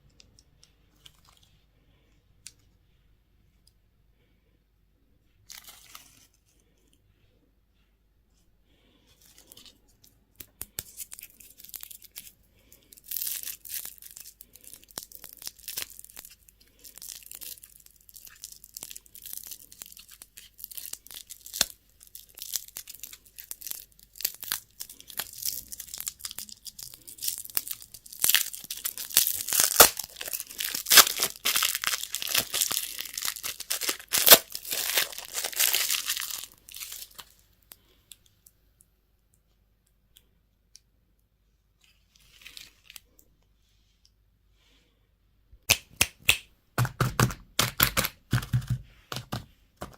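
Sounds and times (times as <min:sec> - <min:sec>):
candy wrappers crinkling: 0:09.2 - 0:38.2, 0:46.8 - 0:49.9.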